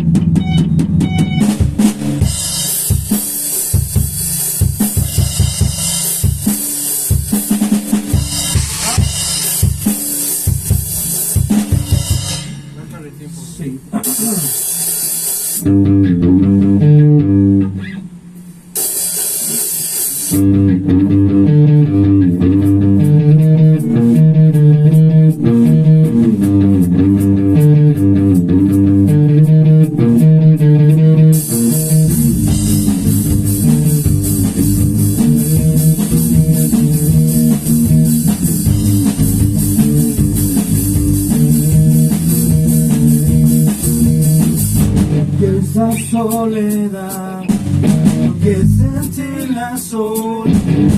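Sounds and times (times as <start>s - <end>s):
cymbals: 0.0s - 13.0s
rock band playing riff: 0.0s - 13.0s, 14.0s - 18.2s, 18.8s - 50.9s.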